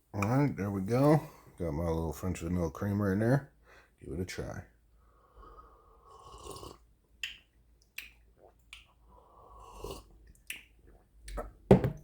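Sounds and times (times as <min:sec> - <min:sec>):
man slurping coffee: 0:06.0 - 0:06.8, 0:09.2 - 0:10.1.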